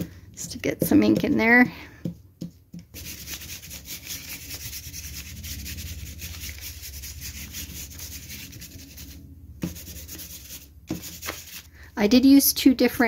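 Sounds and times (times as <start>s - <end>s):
ink pad rubbing on paper bag: 3.0s - 11.7s.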